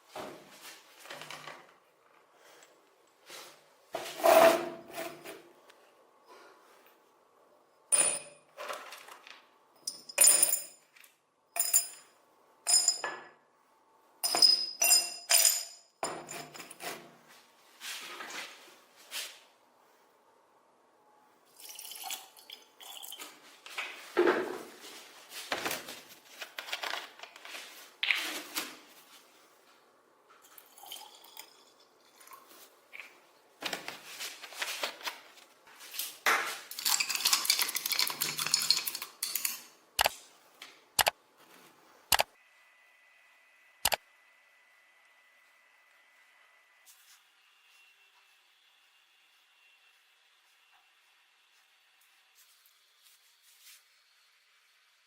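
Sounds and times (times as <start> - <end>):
sharp clicks: 41.0 - 41.2.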